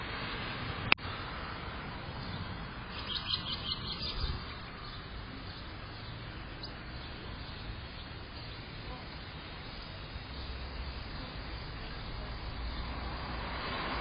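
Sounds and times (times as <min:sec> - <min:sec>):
steady background hiss: 0:00.0 - 0:14.0
bird chirping: 0:02.1 - 0:13.0.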